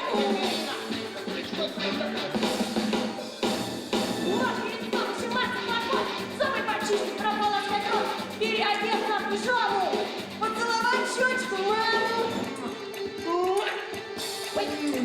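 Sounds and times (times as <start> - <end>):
people singing: 0.0 - 3.1
instrumental accompaniment: 0.0 - 15.0.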